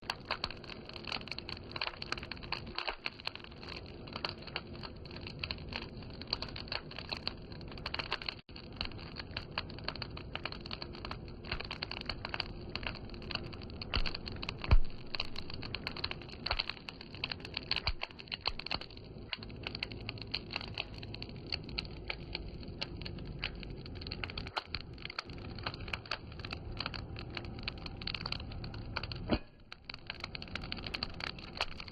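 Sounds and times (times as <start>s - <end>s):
firewood crackling and popping: 0.0s - 31.9s
loud fire pop: 13.9s - 15.6s.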